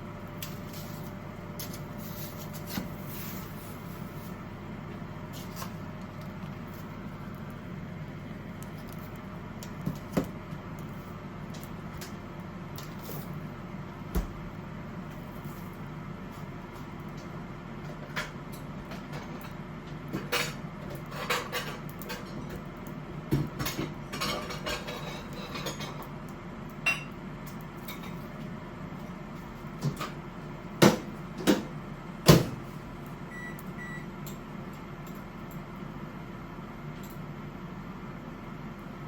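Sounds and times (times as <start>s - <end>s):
utensils and dishes clacking: 23.6s - 26.1s.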